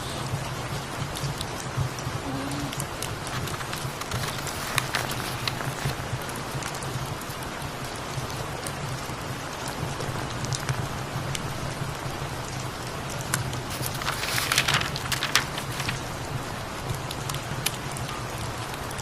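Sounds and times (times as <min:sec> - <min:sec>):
steady rain: 0:00.0 - 0:19.0
rustling: 0:03.2 - 0:06.1, 0:13.7 - 0:16.1
fireplace crackling: 0:03.2 - 0:06.3, 0:13.7 - 0:16.1.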